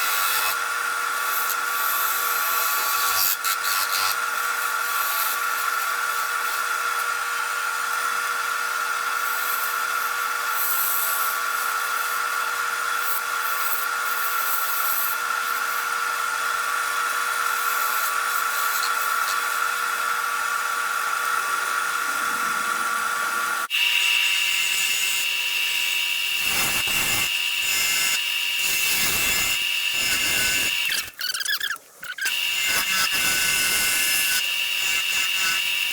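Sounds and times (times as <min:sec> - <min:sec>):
wood lathe whining: 0:00.0 - 0:35.9
turning tool scraping wood: 0:17.4 - 0:19.7.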